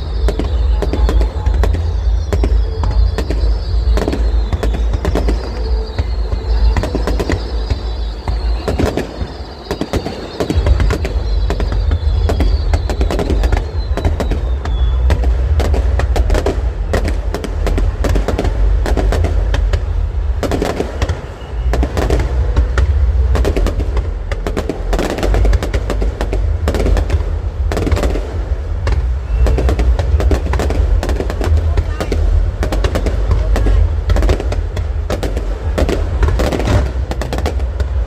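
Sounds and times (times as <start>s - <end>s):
thin falling whistle: 0.0s - 15.0s
fireworks crackling and popping: 0.0s - 38.0s
heavy low rumble: 0.0s - 38.0s.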